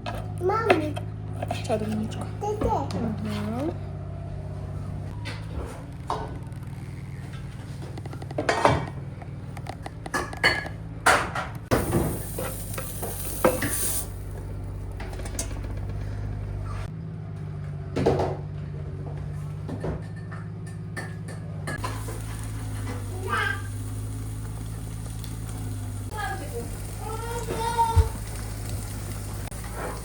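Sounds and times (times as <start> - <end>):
pots and utensils clattering: 8.4 - 9.0, 19.7 - 28.8
food sizzling: 11.7 - 14.6, 21.8 - 30.0.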